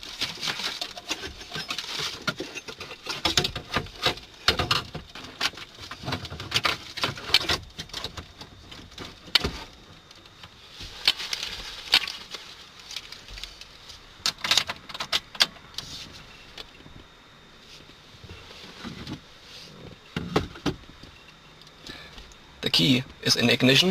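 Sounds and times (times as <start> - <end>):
crackling from car speakers: 0.0 - 23.9.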